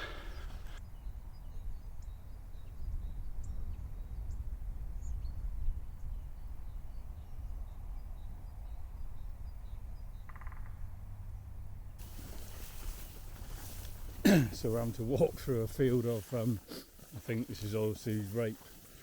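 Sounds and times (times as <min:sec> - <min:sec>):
faint bird chirps: 0:00.0 - 0:14.9
wind rumble on microphone: 0:00.4 - 0:10.3.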